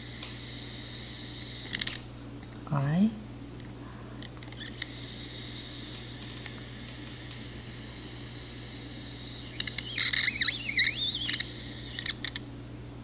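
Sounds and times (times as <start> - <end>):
small clicks: 1.6 - 2.0, 9.5 - 12.4
planchette squeaking on board: 9.4 - 12.4.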